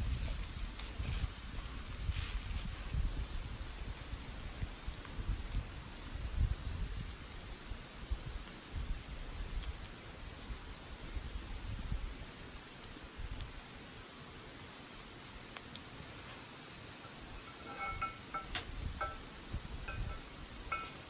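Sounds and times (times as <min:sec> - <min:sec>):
wind buffeting microphone: 0:00.0 - 0:12.4, 0:18.0 - 0:20.7
fire hissing and crackling: 0:00.0 - 0:21.0.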